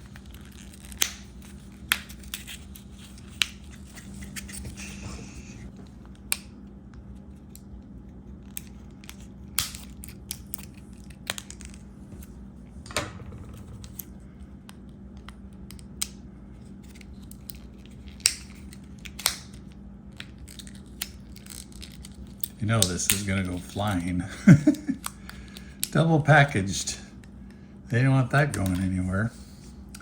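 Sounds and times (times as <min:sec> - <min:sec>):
stiff plastic packaging crackling: 0:00.0 - 0:03.9, 0:20.1 - 0:24.0.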